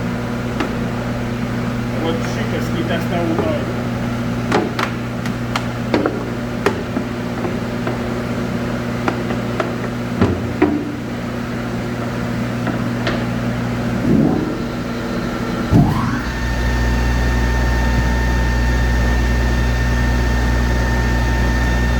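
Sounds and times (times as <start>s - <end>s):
low machine hum: 0.0s - 21.9s.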